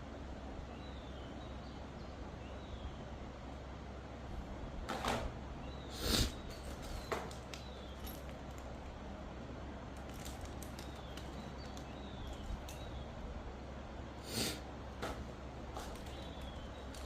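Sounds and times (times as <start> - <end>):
clicks and knocks of objects handled: 6.4 - 9.0, 9.9 - 13.0, 15.0 - 17.0.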